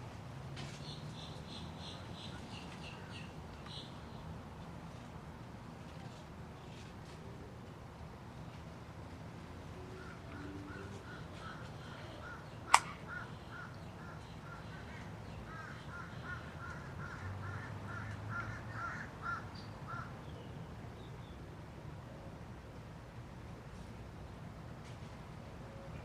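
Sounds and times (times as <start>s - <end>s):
sharp click: 12.7s - 13.0s.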